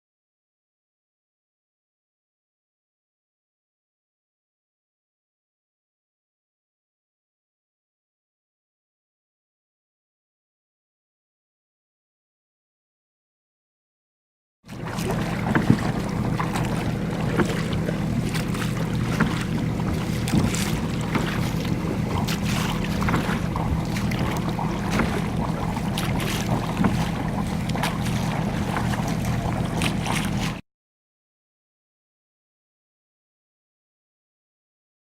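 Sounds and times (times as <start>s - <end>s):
steady low hum: 14.7s - 30.6s
water splashing on hull: 14.7s - 30.6s.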